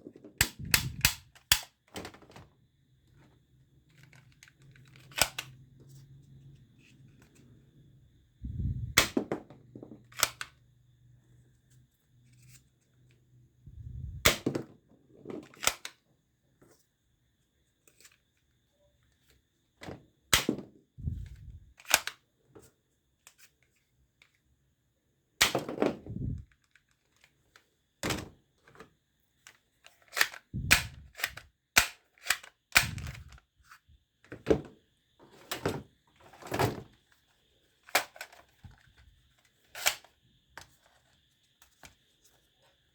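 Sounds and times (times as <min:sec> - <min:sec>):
toy guns snapping and clicking: 0:00.4 - 0:01.8, 0:04.0 - 0:05.5, 0:10.1 - 0:10.6, 0:15.6 - 0:16.0, 0:21.3 - 0:22.2, 0:29.9 - 0:33.4, 0:37.8 - 0:38.8, 0:39.7 - 0:40.1.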